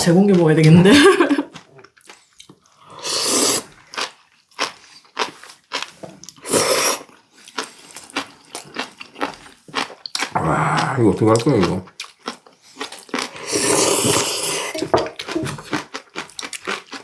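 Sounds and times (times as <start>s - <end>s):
breathy bursts: 10.4s - 11.1s.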